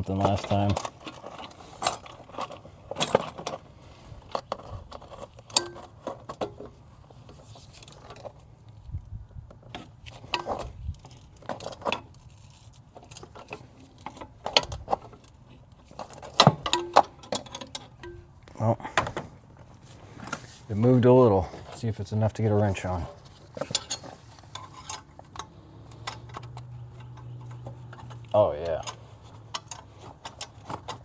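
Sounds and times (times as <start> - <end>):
wrench clinking on metal: 5.5 - 6.5, 16.0 - 18.3, 23.6 - 31.0.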